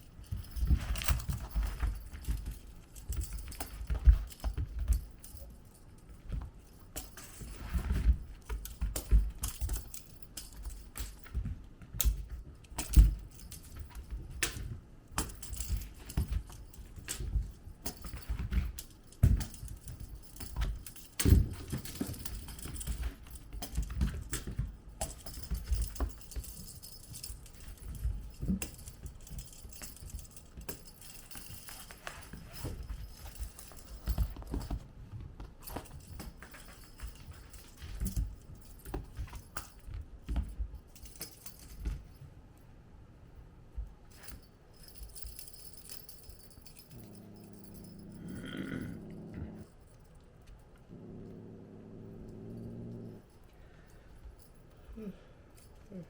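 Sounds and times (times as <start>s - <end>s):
toys rattling: 0.0s - 34.8s, 35.6s - 42.0s, 44.2s - 56.0s
kittens thumping and tapping: 0.0s - 42.2s.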